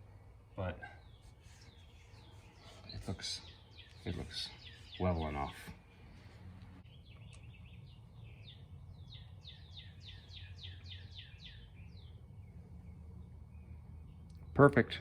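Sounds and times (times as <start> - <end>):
songbird singing falling notes: 6.7 - 14.6.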